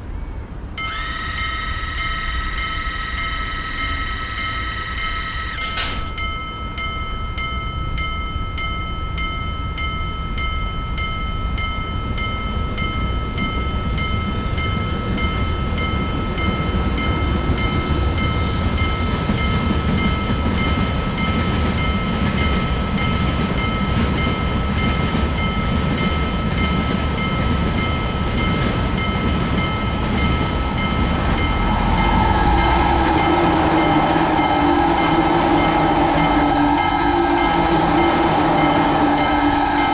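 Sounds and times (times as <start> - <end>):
train rumbling: 0.0 - 39.9
sustained tone: 0.8 - 8.0, 26.8 - 39.9
railroad crossing bell ringing: 0.8 - 39.9.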